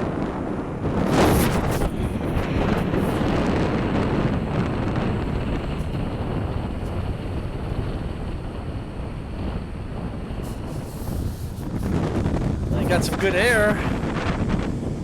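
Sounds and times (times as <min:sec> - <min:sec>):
wind buffeting microphone: 0:00.0 - 0:15.0
ocean surf washing: 0:00.8 - 0:15.0.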